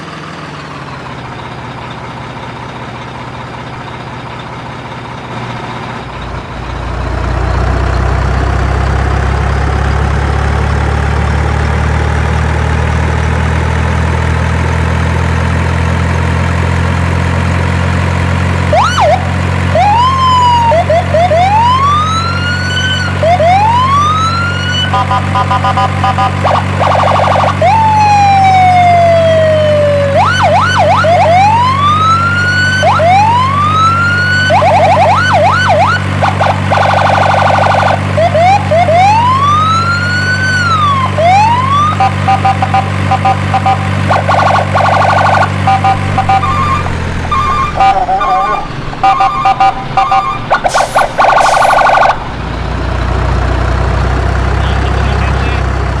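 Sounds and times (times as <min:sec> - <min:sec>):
low engine drone: 0:00.0 - 0:56.0
toy siren wailing: 0:18.7 - 0:52.3.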